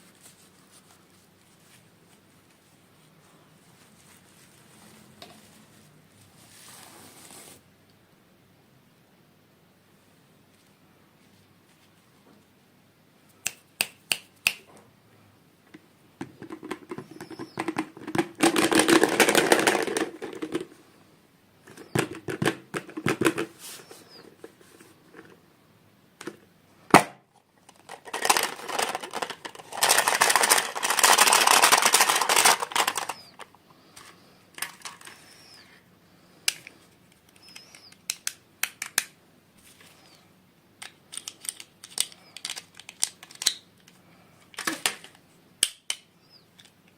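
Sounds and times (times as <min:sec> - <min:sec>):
sharp clicks and taps: 0:13.4 - 0:14.9
packaging crinkling and rustling: 0:16.7 - 0:20.7, 0:27.6 - 0:33.6.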